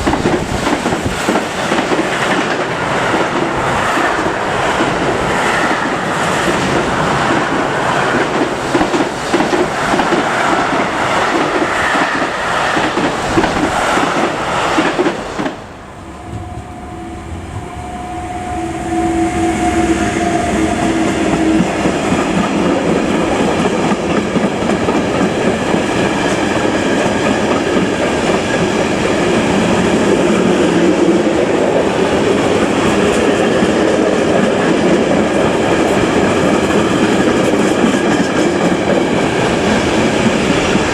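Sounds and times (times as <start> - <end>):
train wheels clattering: 0.0 - 18.0
train rumbling past: 0.0 - 40.9
steady tone: 15.6 - 22.1.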